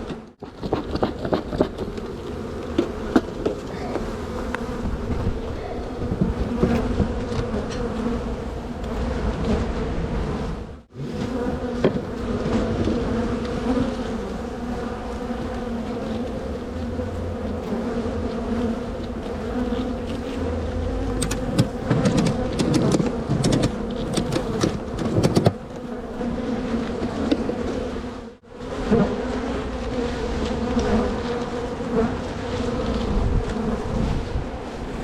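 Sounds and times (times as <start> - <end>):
bees buzzing: 0.0 - 35.0
sharp clicks and knocks: 21.1 - 25.6.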